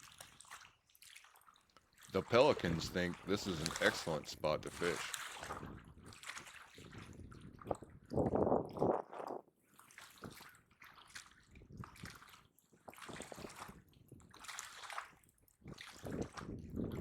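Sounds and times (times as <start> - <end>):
small waves lapping against bank: 0.0 - 17.0
strong wind: 7.0 - 9.4, 16.0 - 17.0.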